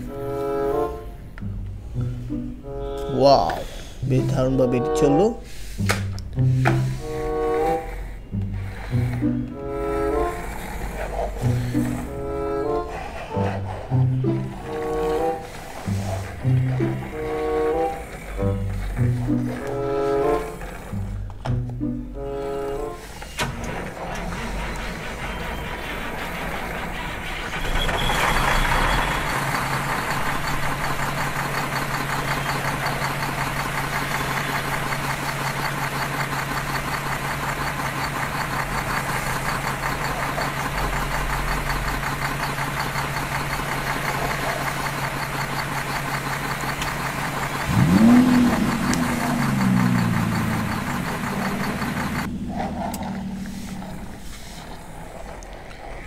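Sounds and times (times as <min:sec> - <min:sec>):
electronic engine sound effects: 0:06.4 - 0:56.0
toy vehicle electric buzz: 0:06.5 - 0:21.3, 0:22.4 - 0:56.0
rising and falling tone: 0:47.6 - 0:54.3.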